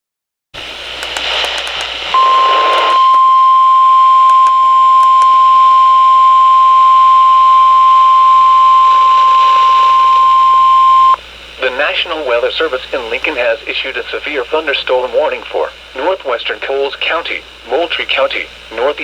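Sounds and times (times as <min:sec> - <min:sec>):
radio static hiss with crackles: 0:00.6 - 0:19.0
steady warning alarm tone: 0:02.1 - 0:11.2.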